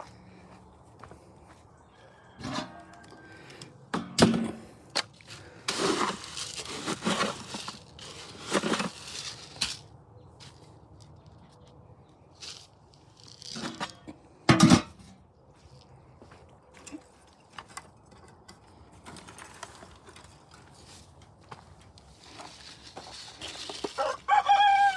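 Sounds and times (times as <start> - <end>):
rustling and crunching: 4.0 - 14.2, 19.0 - 24.9.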